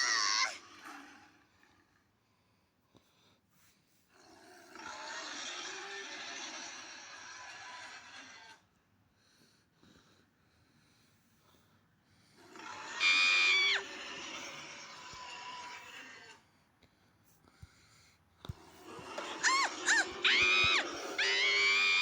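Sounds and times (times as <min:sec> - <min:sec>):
high-pitched scream: 0:00.0 - 0:00.6, 0:12.9 - 0:14.0, 0:19.3 - 0:22.0
dull noisy bed: 0:12.3 - 0:22.0.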